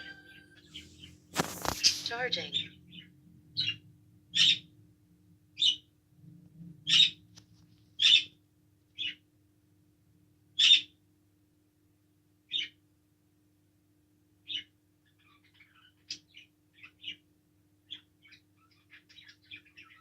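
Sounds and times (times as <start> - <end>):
bird chirping: 0.0 - 4.7, 17.8 - 20.0
faint steady hum: 0.0 - 20.0.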